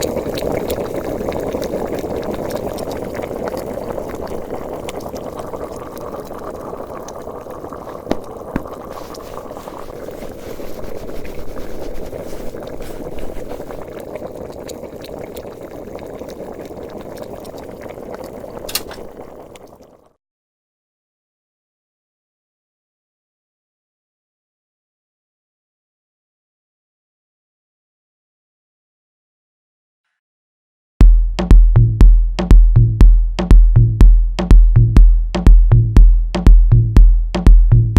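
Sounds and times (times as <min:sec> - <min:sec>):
water boiling in pot: 0:00.0 - 0:20.2.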